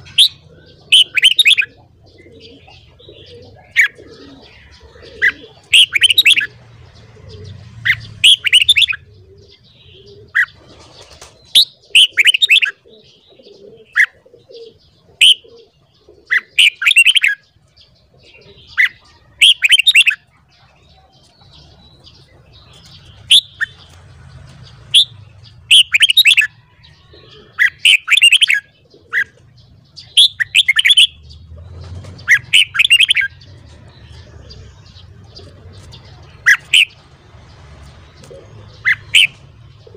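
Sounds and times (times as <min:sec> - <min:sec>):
bulbul singing warbled phrases: 0:00.0 - 0:39.9.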